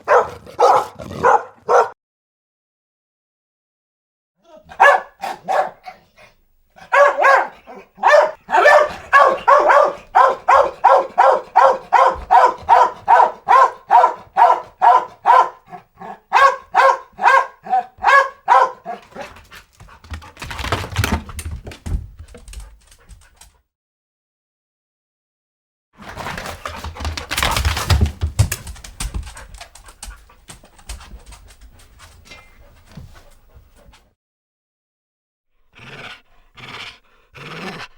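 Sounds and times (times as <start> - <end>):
dog barking: 0.0 - 2.0, 4.6 - 6.1, 6.8 - 19.4.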